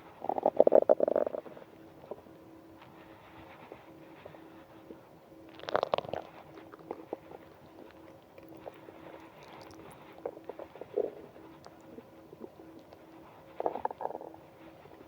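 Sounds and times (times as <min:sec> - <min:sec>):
stomach growling: 0:00.2 - 0:01.7, 0:05.5 - 0:12.9, 0:13.5 - 0:14.5.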